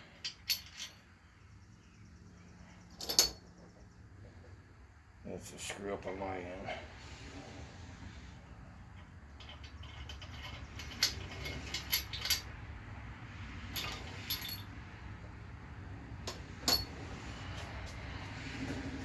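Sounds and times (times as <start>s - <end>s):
metallic clinks of tools: 13.8s - 14.7s, 16.7s - 16.9s.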